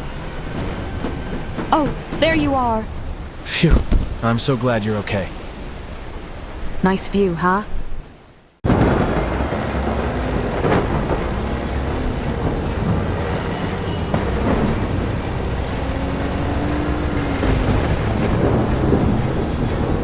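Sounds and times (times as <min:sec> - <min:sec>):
rushing wind: 0:00.0 - 0:20.0
deep rumble: 0:08.7 - 0:20.0.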